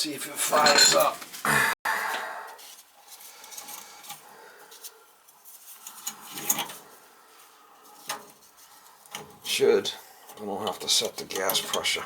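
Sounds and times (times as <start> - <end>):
faint handling clicks and knocks: 10.2 - 12.0.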